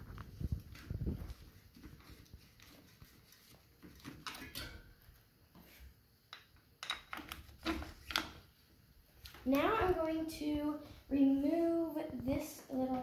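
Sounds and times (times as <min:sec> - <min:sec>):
bicycle parts clicking and knocking: 0:06.3 - 0:08.4.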